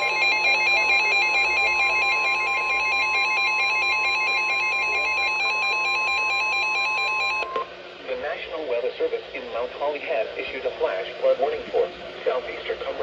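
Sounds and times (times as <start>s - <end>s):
alternating two-pitch beeping: 0.0s - 7.6s
steady alarm tone: 0.0s - 7.6s.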